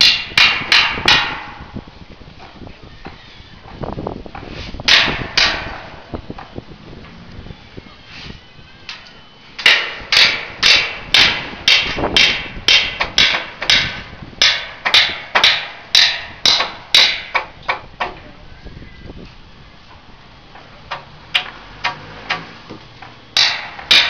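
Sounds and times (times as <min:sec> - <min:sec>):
hammer blows ringing: 0:09.6 - 0:17.5, 0:23.3 - 0:24.0.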